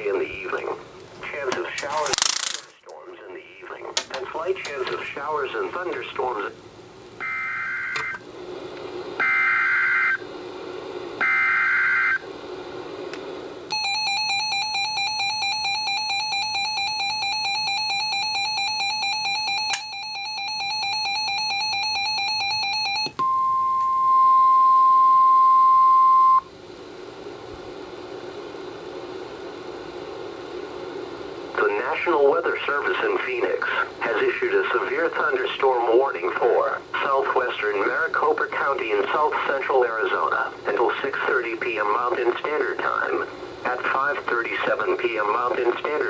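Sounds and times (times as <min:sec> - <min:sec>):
steady warning alarm tone: 0:07.2 - 0:08.2, 0:09.2 - 0:10.2, 0:11.2 - 0:12.3, 0:13.7 - 0:26.5
alarm beeping rapidly: 0:11.2 - 0:12.2, 0:13.7 - 0:26.4.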